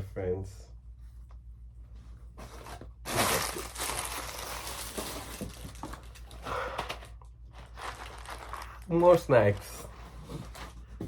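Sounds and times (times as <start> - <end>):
plastic packaging crinkling: 3.1 - 6.4, 7.6 - 9.8.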